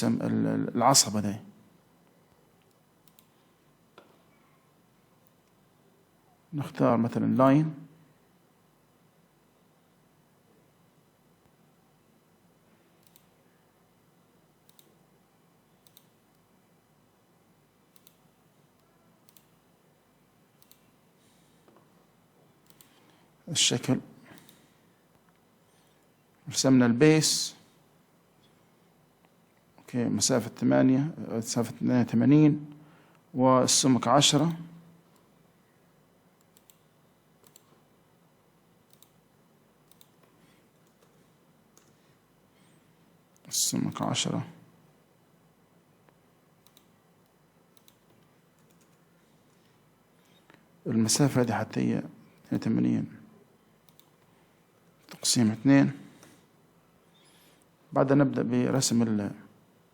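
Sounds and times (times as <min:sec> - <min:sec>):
room hiss: 0:00.0 - 0:59.9
computer mouse clicks: 0:02.6 - 0:04.2, 0:13.0 - 0:13.4, 0:14.6 - 0:15.0, 0:15.8 - 0:16.4, 0:17.9 - 0:19.6, 0:20.6 - 0:20.9, 0:22.6 - 0:23.2, 0:24.3 - 0:25.4, 0:36.4 - 0:37.8, 0:38.8 - 0:39.2, 0:39.8 - 0:42.0, 0:46.1 - 0:49.6, 0:53.8 - 0:54.3.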